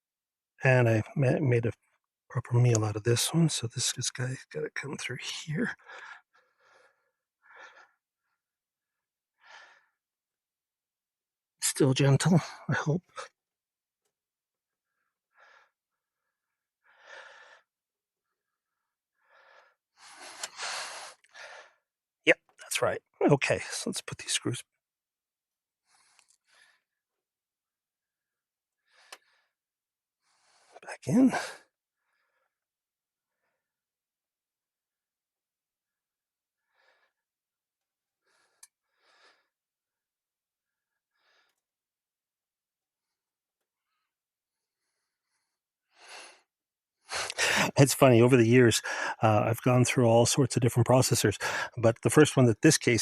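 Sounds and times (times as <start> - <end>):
faint breaths: 5.8 - 8.4, 48.8 - 49.2
man breathing: 19.1 - 21.9, 25.8 - 27.0, 36.6 - 37.2, 38.2 - 39.6, 43.8 - 47.8, 48.8 - 49.2.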